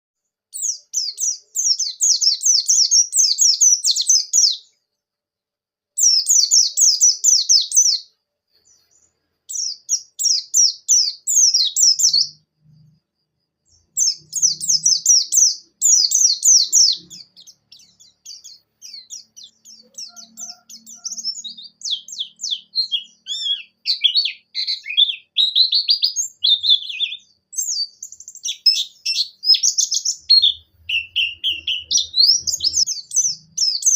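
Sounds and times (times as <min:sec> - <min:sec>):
bird singing high notes: 0:13.8 - 0:33.9.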